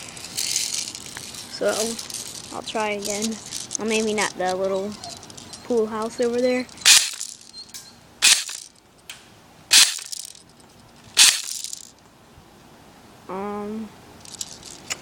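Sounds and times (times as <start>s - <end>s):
airsoft gun shots: 8.2s - 8.6s, 9.7s - 10.1s, 11.2s - 11.5s.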